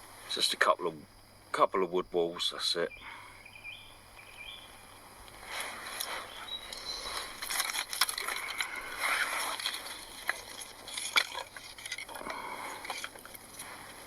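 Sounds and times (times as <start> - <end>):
twigs snapping and crackling: 6.0 - 14.0.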